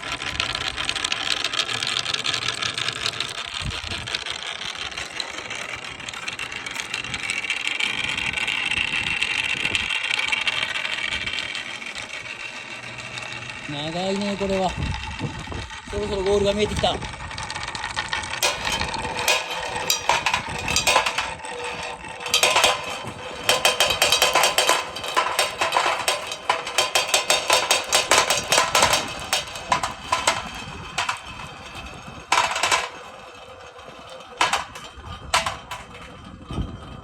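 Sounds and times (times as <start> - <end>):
marble clattering down wooden track: 0.0 - 36.2.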